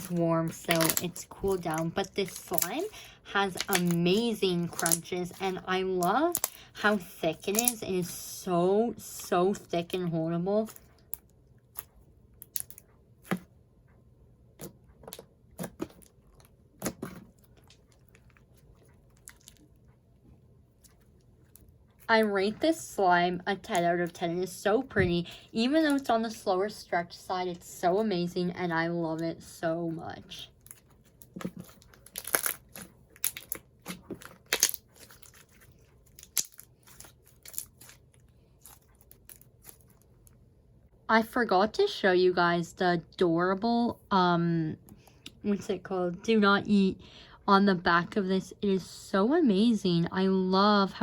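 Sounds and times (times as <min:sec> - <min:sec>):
crunchy slime crackling: 0:00.0 - 0:06.6, 0:07.4 - 0:07.8, 0:15.6 - 0:19.7, 0:30.3 - 0:40.2
slime squeezed and stretched: 0:31.4 - 0:38.0.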